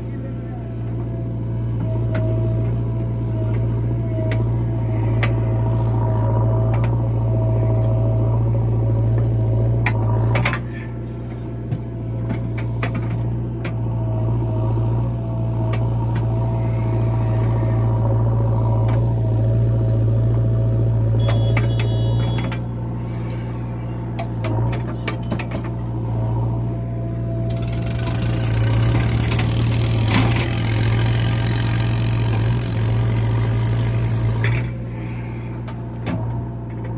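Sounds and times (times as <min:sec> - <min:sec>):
diesel engine running: 0:00.0 - 0:36.9
pulsing high beep: 0:21.2 - 0:22.4.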